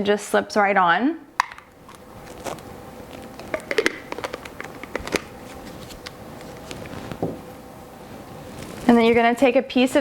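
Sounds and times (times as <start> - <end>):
plastic knock: 1.4 - 1.8
plastic parts clicking and tapping: 1.4 - 2.0.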